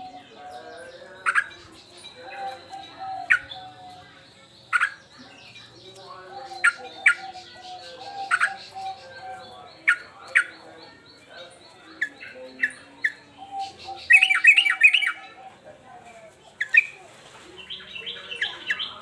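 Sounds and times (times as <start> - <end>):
birds chirping: 0.0 - 19.0
bulbul sharp calls: 4.6 - 5.8, 6.5 - 15.5.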